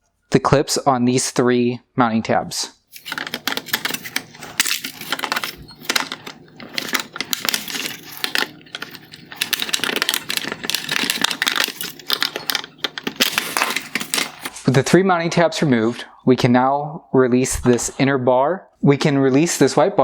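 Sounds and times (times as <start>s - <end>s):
plastic clips clicking and scraping: 2.9s - 14.5s.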